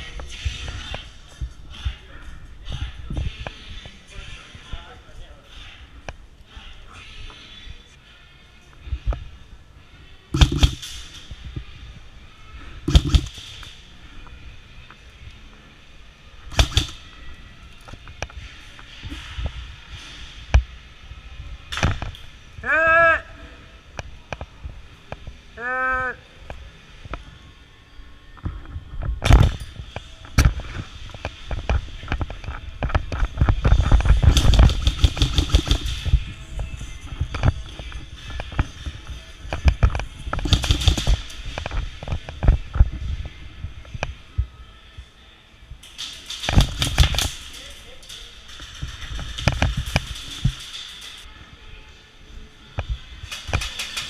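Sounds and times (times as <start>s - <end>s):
airsoft gun bursts: 10.4s - 11.0s, 12.9s - 13.4s, 16.5s - 17.0s, 34.3s - 36.1s, 40.4s - 41.3s, 46.4s - 47.4s.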